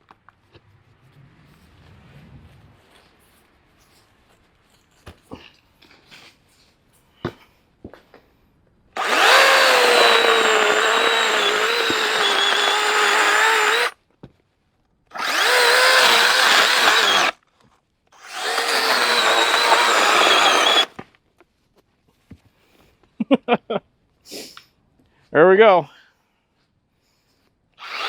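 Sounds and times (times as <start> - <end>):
electric chainsaw cutting wood: 9.0 - 14.0, 15.1 - 17.4, 18.2 - 21.0, 27.8 - 28.0.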